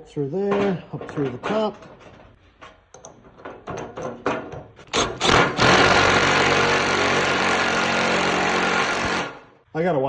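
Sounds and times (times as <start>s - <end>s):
metal parts clicking and knocking: 0.5s - 5.8s
impact wrench running: 4.9s - 9.5s.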